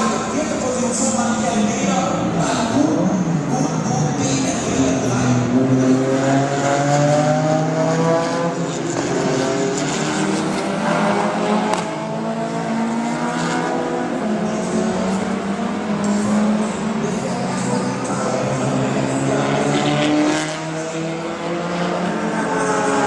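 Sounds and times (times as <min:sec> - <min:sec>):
race car engines accelerating: 0:00.0 - 0:23.0.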